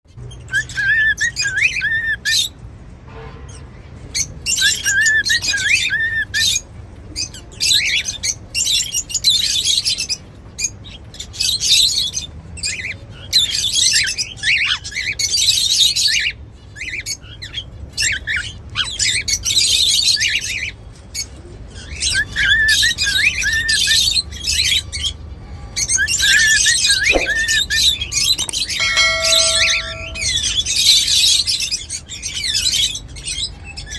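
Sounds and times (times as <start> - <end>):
cockatiels screechy chatter: 7.2 - 25.2.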